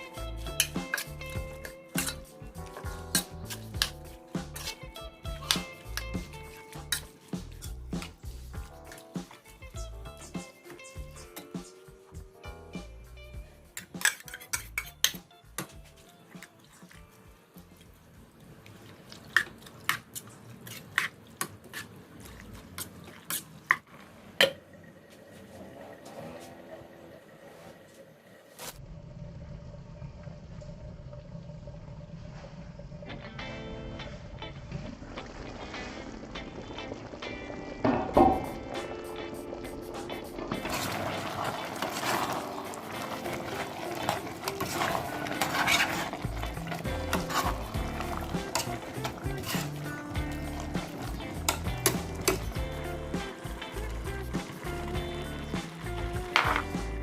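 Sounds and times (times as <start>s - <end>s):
utensils scraping a pot: 0.0s - 8.2s, 13.8s - 15.8s, 19.4s - 22.0s, 22.7s - 23.8s, 39.6s - 52.9s
background music: 0.0s - 18.3s, 33.2s - 57.0s
soft wet squishing: 15.7s - 23.8s.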